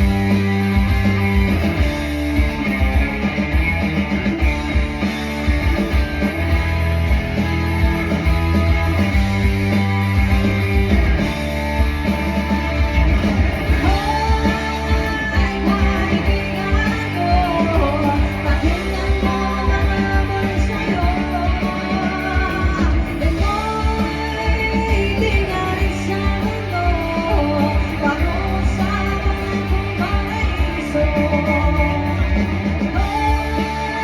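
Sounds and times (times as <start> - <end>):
live rock band playing: 0.0 - 34.0
person singing: 13.7 - 34.0.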